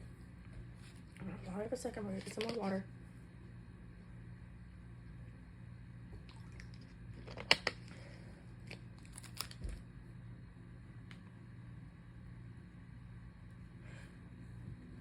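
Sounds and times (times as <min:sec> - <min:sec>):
steady low hum: 0:00.0 - 0:15.0
plastic bottle crinkling: 0:08.6 - 0:09.8.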